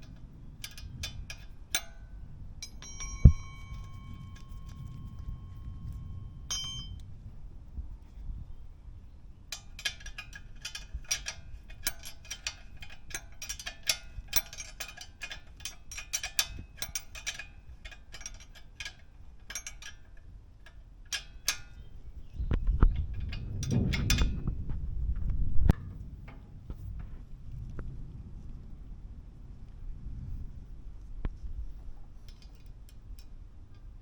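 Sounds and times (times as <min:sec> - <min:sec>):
hand tools clinking on metal: 0:00.0 - 0:07.1, 0:09.5 - 0:22.2
low background rumble: 0:00.0 - 0:19.5, 0:20.1 - 0:34.0.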